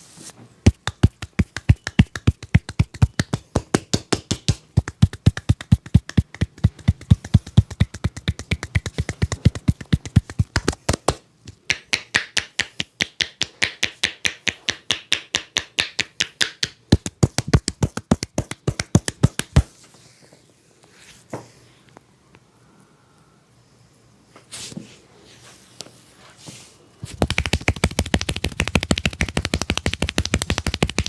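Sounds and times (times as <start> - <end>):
palms slapping on body: 0.6 - 19.7, 27.1 - 31.0.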